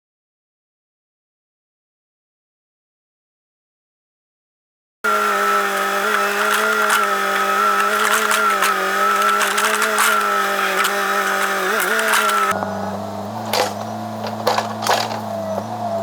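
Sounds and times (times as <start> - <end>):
chainsaw cutting wood: 5.1 - 12.6, 13.5 - 15.3.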